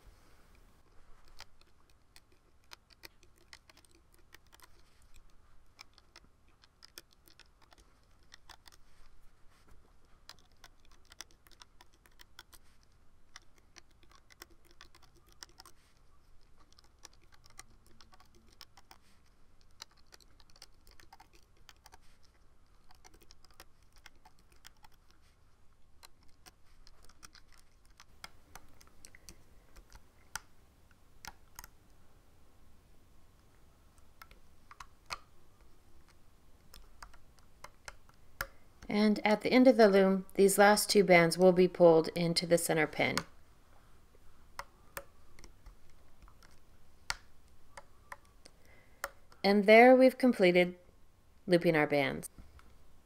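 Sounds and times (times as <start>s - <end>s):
loom hook clicking on rubber bands: 0.5s - 31.9s, 33.3s - 43.4s, 44.1s - 49.6s.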